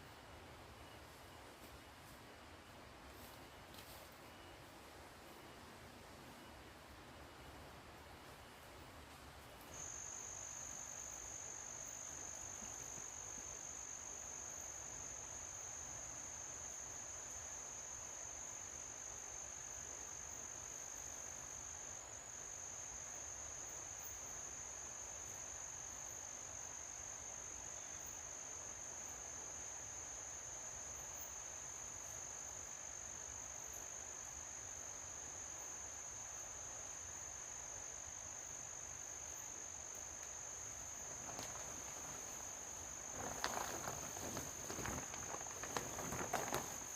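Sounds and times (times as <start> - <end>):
faint background hiss: 0.0 - 46.9
crickets trilling: 9.4 - 46.9.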